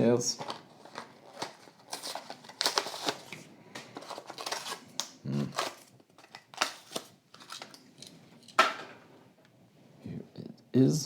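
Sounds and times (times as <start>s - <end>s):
plastic packaging crackling: 0.4s - 8.1s.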